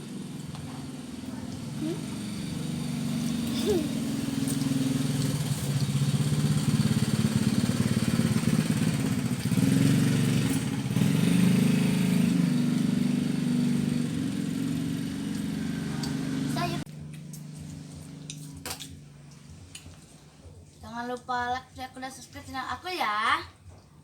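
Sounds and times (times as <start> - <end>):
small engine running: 0.0 - 18.6.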